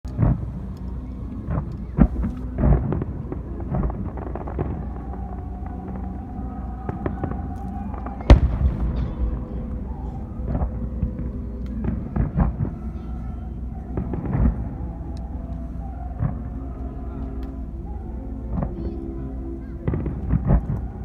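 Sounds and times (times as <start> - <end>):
low rumble: 0.1 - 21.0
fireworks bursting: 6.9 - 12.7.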